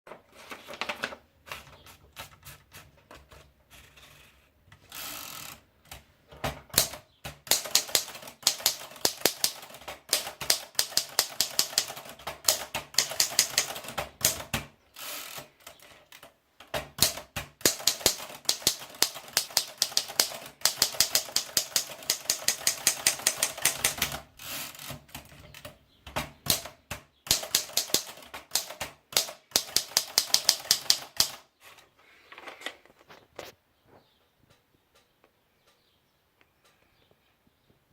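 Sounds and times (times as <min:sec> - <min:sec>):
typewriter keystrokes clattering: 0:06.4 - 0:14.7, 0:16.6 - 0:31.4.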